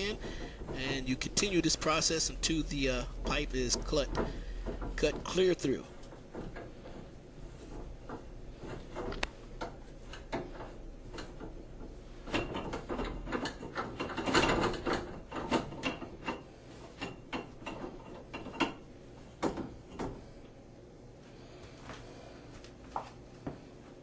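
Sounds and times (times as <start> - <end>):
pipe cutter clicking and scraping: 0.0 - 18.8.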